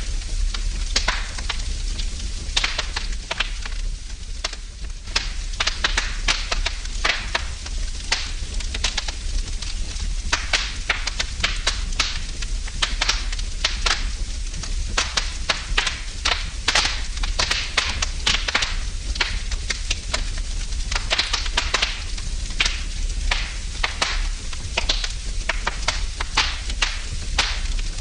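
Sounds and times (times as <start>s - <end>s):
low rumble: 0.0s - 6.1s
wood fire crackling and popping: 0.0s - 28.0s.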